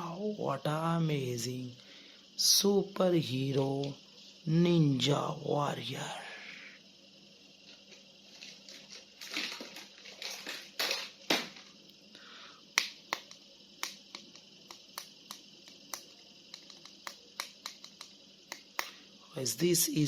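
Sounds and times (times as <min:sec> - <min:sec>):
plastic packaging crinkling: 0:08.3 - 0:11.6
sharp plastic clicks: 0:12.8 - 0:19.0.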